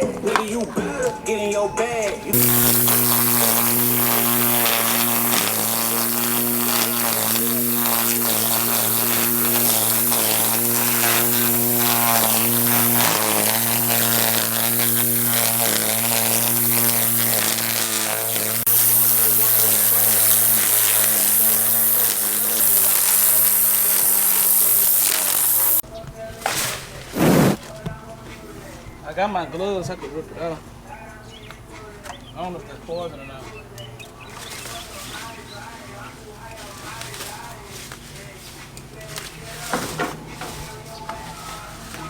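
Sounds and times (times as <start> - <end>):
string trimmer motor buzzing: 2.3 - 25.8.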